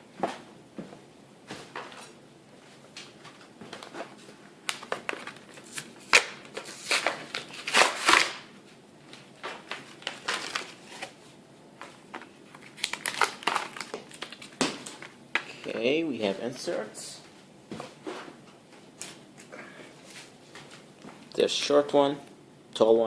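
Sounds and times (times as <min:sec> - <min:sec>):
plastic packaging rustling: 0:03.7 - 0:08.5, 0:09.4 - 0:15.6.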